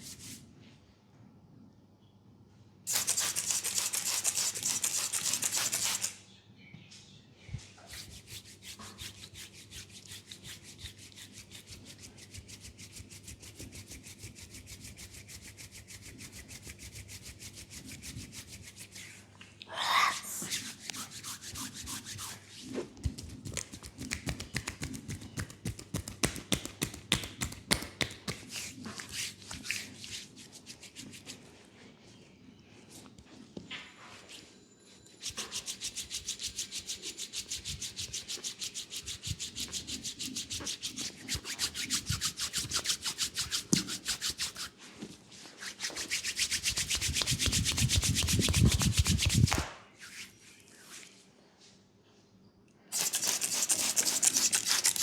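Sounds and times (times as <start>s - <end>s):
skin rubbing on skin: 2.9s - 6.1s, 7.9s - 19.2s, 20.4s - 31.6s, 35.2s - 44.8s, 45.6s - 51.1s, 52.9s - 55.0s
slapping strokes on skin: 23.0s - 31.4s, 45.8s - 50.2s.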